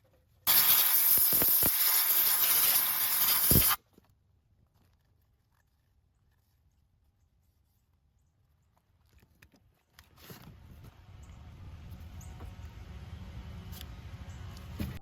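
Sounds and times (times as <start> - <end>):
aerosol can spraying hiss: 0.5 - 3.8.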